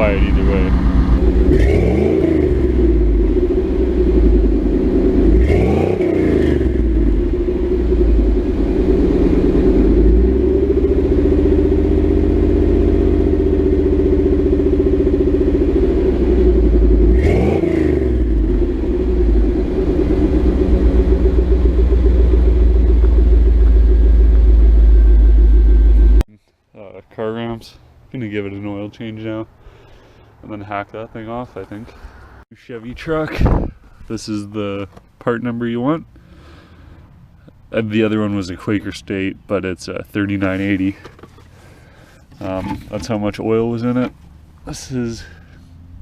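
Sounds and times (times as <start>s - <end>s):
car engine revving: 0.0s - 26.2s.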